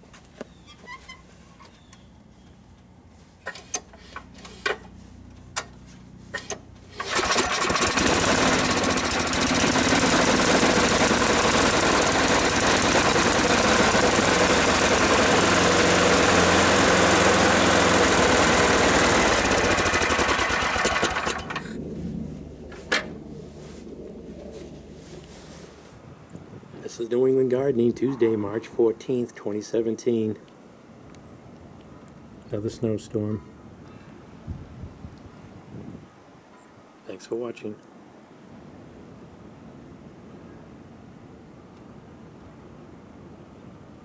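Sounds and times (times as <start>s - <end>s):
snowblower engine running: 6.9s - 21.8s.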